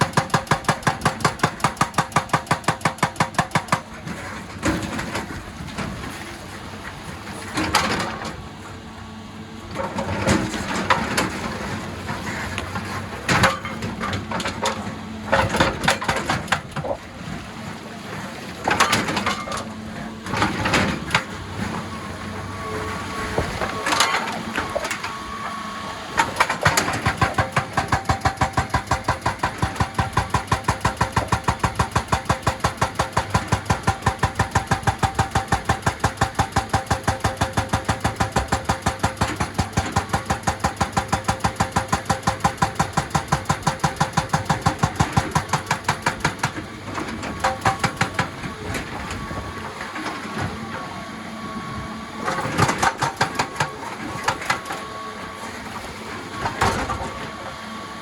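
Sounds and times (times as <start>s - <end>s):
hydraulic breaker hammering stone: 0.0s - 6.0s, 9.8s - 17.1s, 18.6s - 21.4s, 23.2s - 25.5s, 26.2s - 50.8s, 52.2s - 57.7s
excavator engine running: 0.0s - 58.0s.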